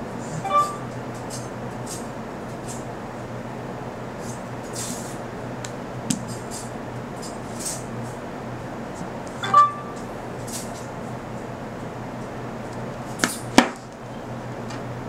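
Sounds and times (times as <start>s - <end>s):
short beep: 0.3s - 0.9s, 9.4s - 10.0s.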